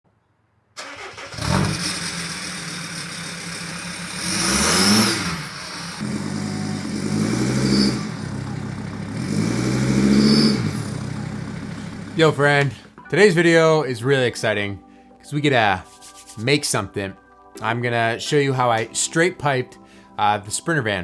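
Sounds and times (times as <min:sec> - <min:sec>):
van engine starting and revving: 0:00.8 - 0:12.4.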